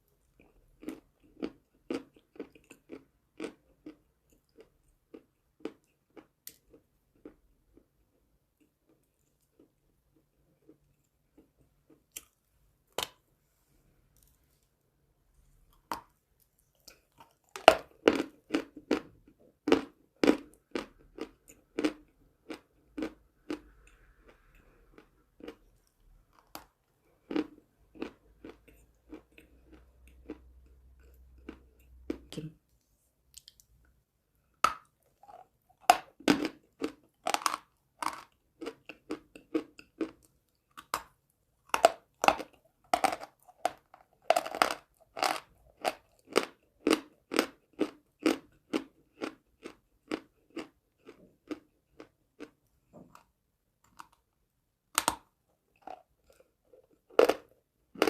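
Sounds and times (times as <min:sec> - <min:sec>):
crunchy chewing: 0:00.3 - 0:07.8, 0:15.7 - 0:32.4, 0:34.6 - 0:54.2, 0:55.8 - 0:58.0.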